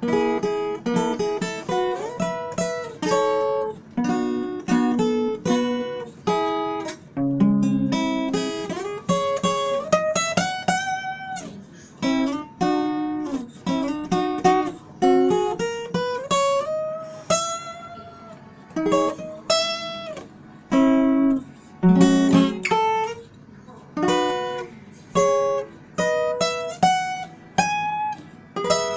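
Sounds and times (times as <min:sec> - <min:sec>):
acoustic guitar strumming: 0:00.0 - 0:28.9.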